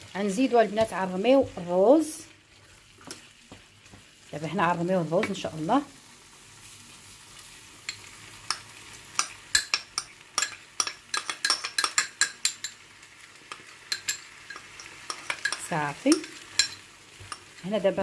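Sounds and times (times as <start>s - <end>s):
food sizzling in a pan: 0.0s - 18.0s
utensil clicking against pan: 7.9s - 12.8s, 13.5s - 17.6s.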